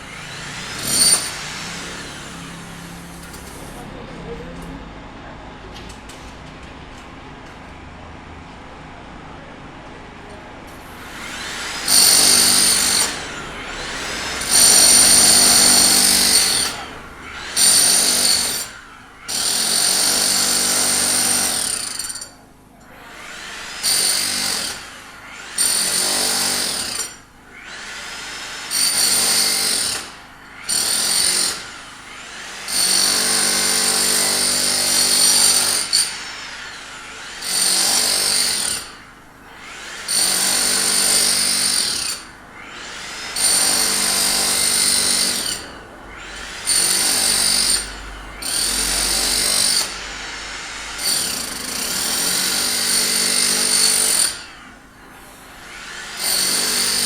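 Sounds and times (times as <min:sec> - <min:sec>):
power drill whine: 0:00.0 - 0:04.7, 0:10.2 - 0:57.0.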